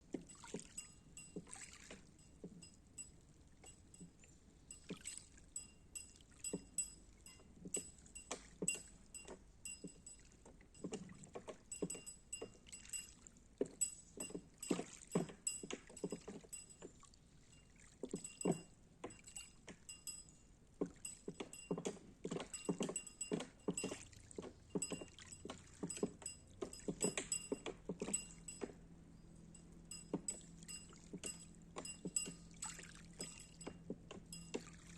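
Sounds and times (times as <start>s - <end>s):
light metallic clinks: 0.1s - 34.9s
buoy knocking: 20.8s - 28.9s, 29.5s - 34.9s.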